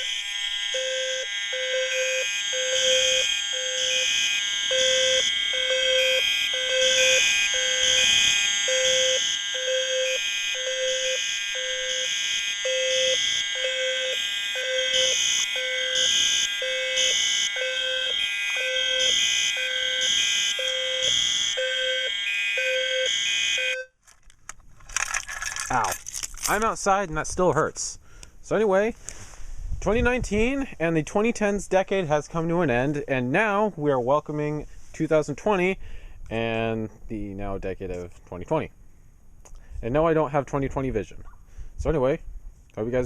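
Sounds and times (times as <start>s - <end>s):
high-pitched fire alarm horns: 0.0s - 24.0s
low pulsing fire alarm horn: 0.0s - 24.0s.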